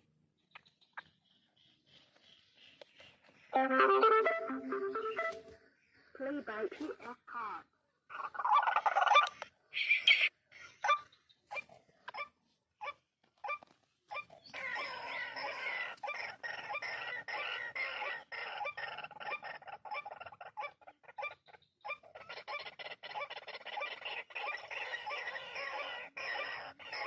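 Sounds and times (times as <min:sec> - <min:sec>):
waterhens harsh calls: 0:14.2 - 0:27.0.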